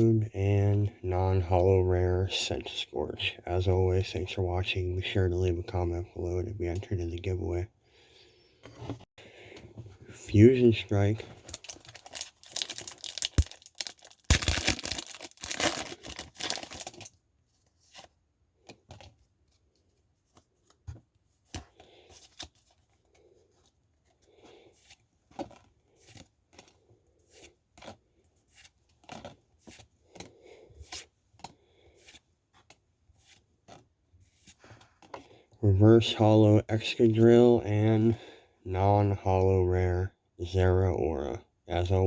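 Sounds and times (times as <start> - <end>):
foil wrapper tearing: 11.5 - 17.1.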